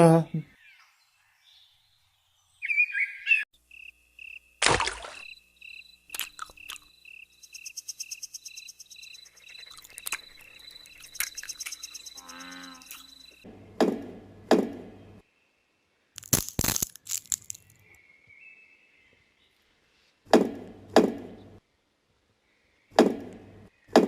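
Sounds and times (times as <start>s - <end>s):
very high insect-like trill: 6.6s - 13.4s.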